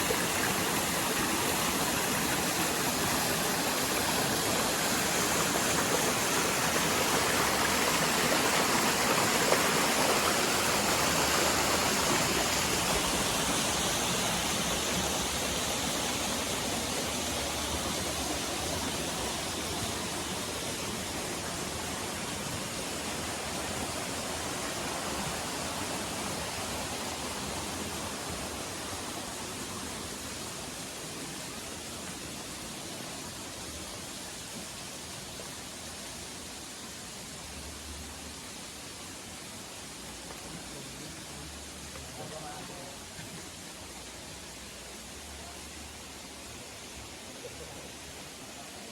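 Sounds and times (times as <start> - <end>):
waterfall rushing: 0.0 - 48.9.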